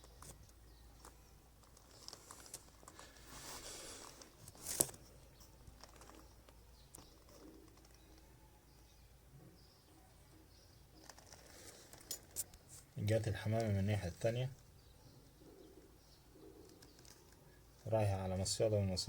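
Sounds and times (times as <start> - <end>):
small ticks: 4.0 - 8.3, 16.6 - 17.5.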